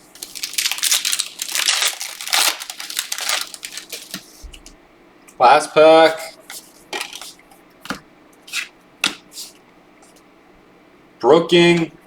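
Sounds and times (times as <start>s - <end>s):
wrapper crinkling and crumpling: 0.0s - 4.4s.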